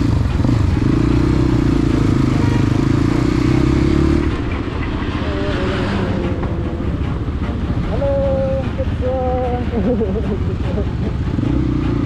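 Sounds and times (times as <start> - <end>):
motorcycle engine riding off: 0.0 - 7.7.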